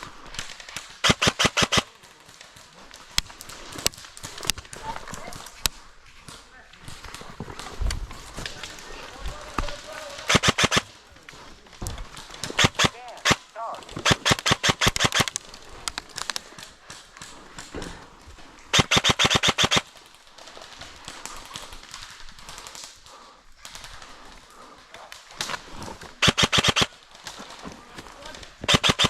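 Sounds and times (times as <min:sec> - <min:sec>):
airsoft rifle full-auto bursts: 0:00.8 - 0:01.9, 0:10.2 - 0:11.0, 0:12.4 - 0:16.7, 0:18.7 - 0:19.9, 0:26.2 - 0:27.0, 0:28.6 - 0:29.0.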